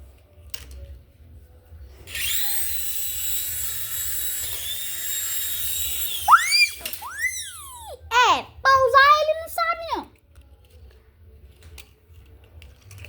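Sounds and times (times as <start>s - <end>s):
toy helicopter motor whirring: 2.0s - 8.1s
high-pitched squeal: 2.1s - 7.9s.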